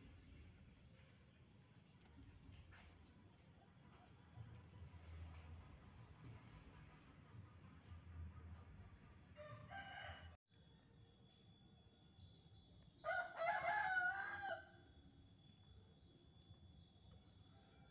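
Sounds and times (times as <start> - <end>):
rooster crowing: 9.4 - 10.4, 13.0 - 14.8.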